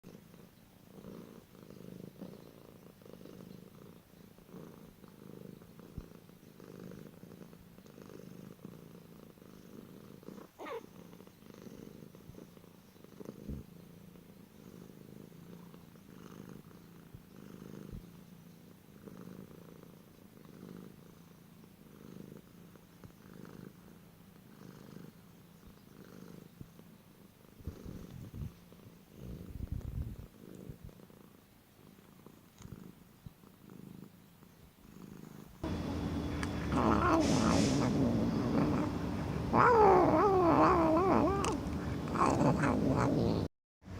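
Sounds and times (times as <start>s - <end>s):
cat purring: 0.0s - 43.5s.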